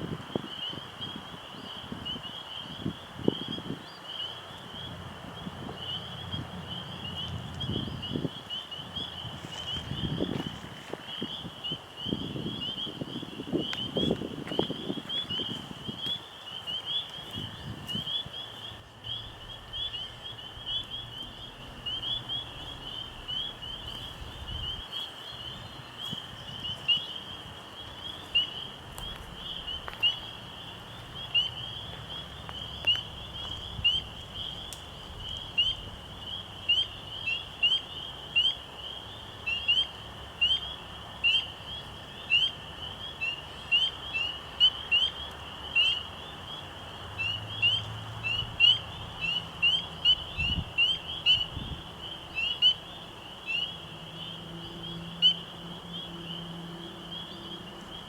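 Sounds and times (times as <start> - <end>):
frogs chirping chorus: 0.0 - 58.0
faint low rumble: 17.3 - 36.3
close frog chirping loudly: 47.2 - 56.4.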